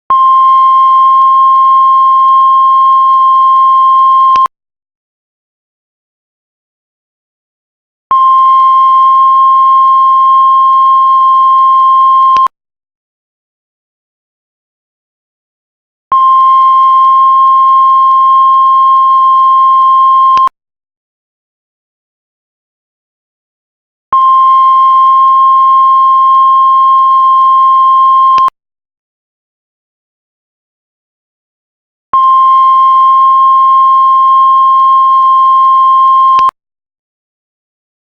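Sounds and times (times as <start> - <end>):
heart monitor flatline beep: 0.1 - 4.5, 8.1 - 12.5, 16.1 - 20.6, 24.2 - 28.6, 32.2 - 36.6
heart monitor flatline tone: 32.2 - 36.6.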